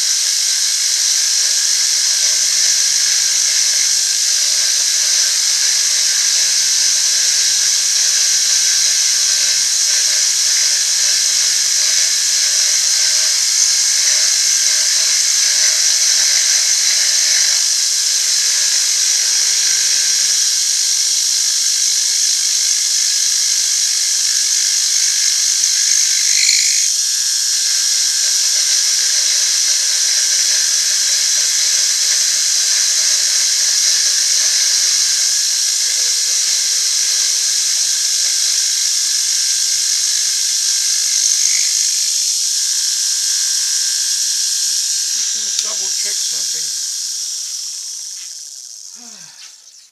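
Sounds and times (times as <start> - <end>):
bright squeal: 26.0 - 26.9.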